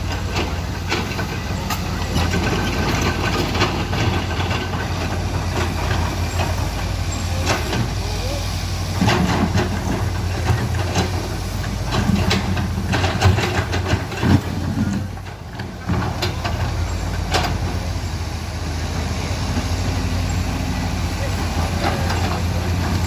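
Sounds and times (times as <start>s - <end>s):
excavator diesel engine running: 0.0s - 23.0s
clanks and knocks: 9.0s - 17.8s.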